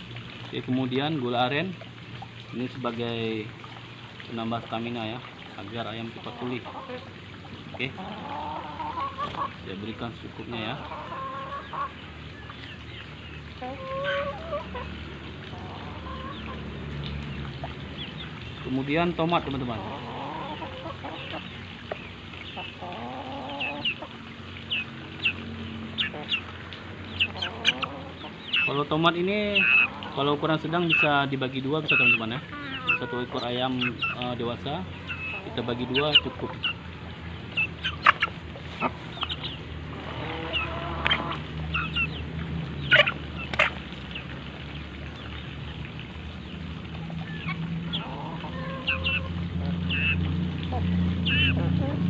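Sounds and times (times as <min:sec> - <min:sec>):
chickens peeping: 0:04.3 - 0:52.0
chicken clucking: 0:27.1 - 0:36.8, 0:37.6 - 0:42.1, 0:42.9 - 0:43.8, 0:47.4 - 0:49.3.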